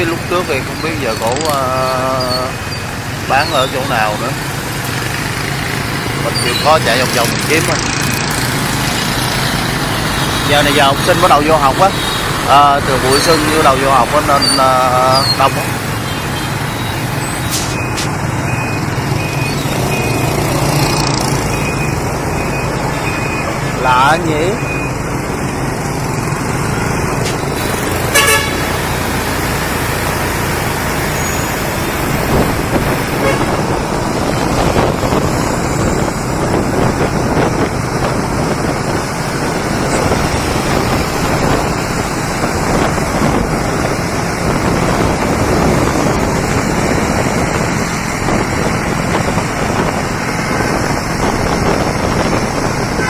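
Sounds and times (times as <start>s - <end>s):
street traffic engine noise: 0.0s - 53.0s
horns tooting: 10.1s - 24.9s, 27.2s - 29.1s, 33.0s - 33.9s.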